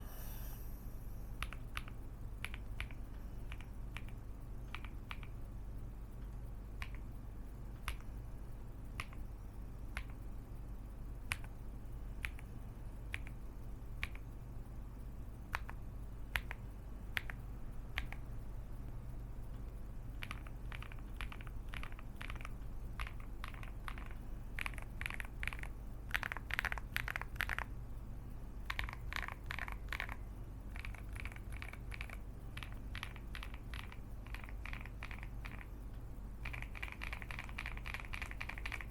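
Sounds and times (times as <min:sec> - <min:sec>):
steady low hum: 0:00.0 - 0:38.9
mechanical keyboard key clacks: 0:36.4 - 0:38.9.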